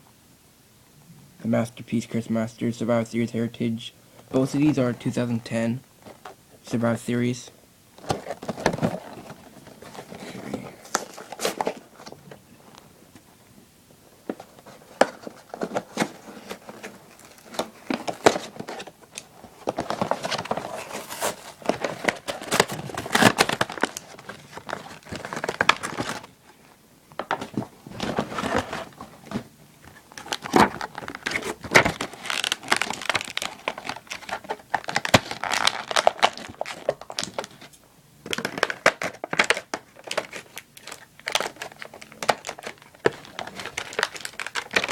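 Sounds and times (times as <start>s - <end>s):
packaging crinkling and tearing: 8.0s - 12.2s, 14.3s - 26.4s, 27.2s - 44.9s.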